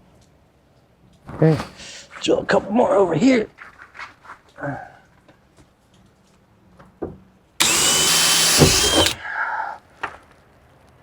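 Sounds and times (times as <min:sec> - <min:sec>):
power drill boring through plate: 0:07.6 - 0:09.2.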